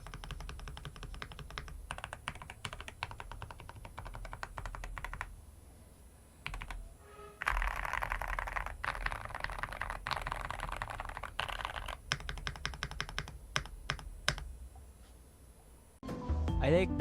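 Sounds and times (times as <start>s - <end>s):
mechanical keyboard typing: 0.0s - 5.3s, 6.4s - 6.8s, 7.4s - 14.5s.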